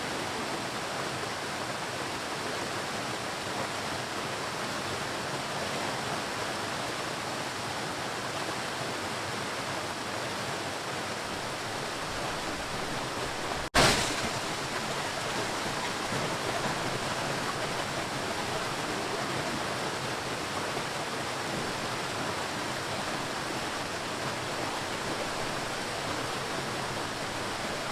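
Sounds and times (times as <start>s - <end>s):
ocean waves washing: 11.1s - 27.9s.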